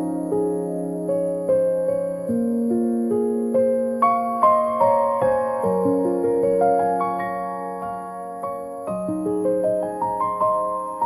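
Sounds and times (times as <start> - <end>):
gentle instrumental music: 0.0 - 11.0.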